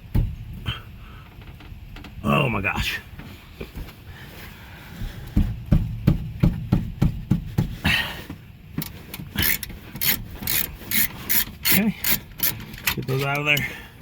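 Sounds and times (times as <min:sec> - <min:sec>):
ratchet wrench knocks and clicks: 0:08.8 - 0:13.6.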